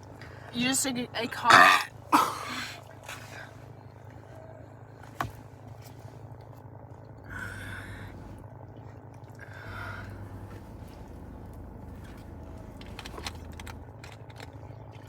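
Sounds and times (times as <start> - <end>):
low hum: 6.2 - 15.0.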